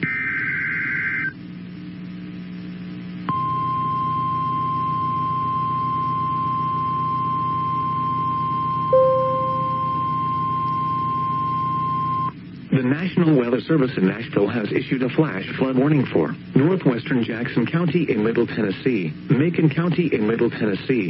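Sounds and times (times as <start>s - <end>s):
low radio hum: 1.3s - 21.0s
steady high attention tone: 8.9s - 10.6s
low beep: 8.9s - 12.3s.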